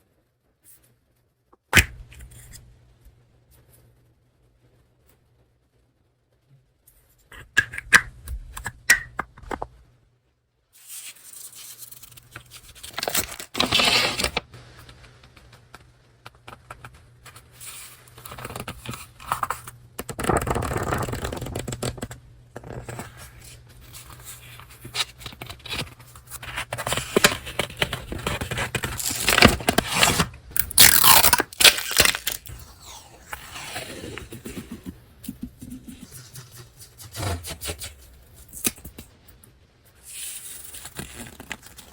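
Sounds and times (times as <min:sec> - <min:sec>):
paper rustling and tearing: 0:10.8 - 0:15.0, 0:22.6 - 0:39.1, 0:40.0 - 0:41.9.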